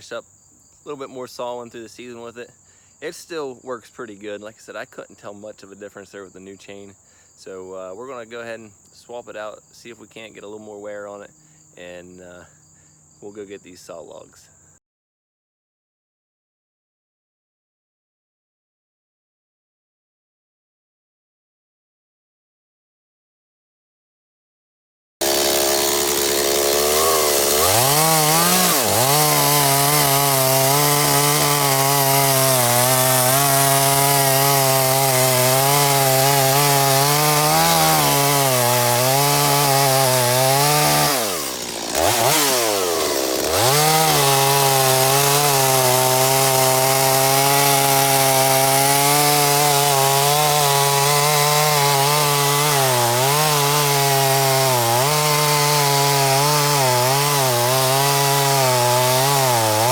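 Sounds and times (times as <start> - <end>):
chainsaw cutting wood: 25.2 - 59.9.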